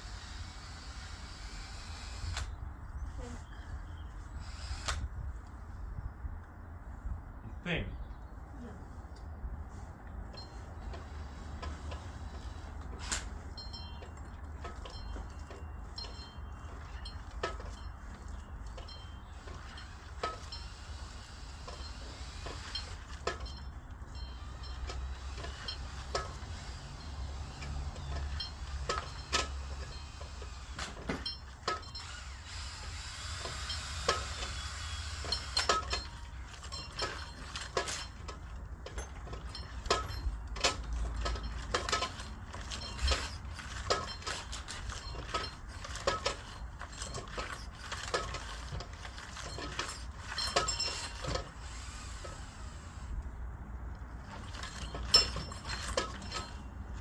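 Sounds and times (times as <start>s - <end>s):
clicks and metal clinks: 10.3s - 52.4s, 54.0s - 57.0s.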